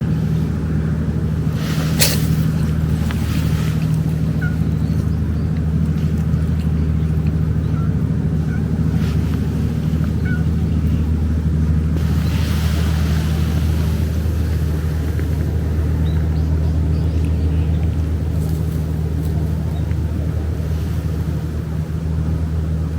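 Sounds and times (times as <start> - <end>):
steady low rumble: 0.0 - 22.9
cat sneezing: 1.8 - 2.4.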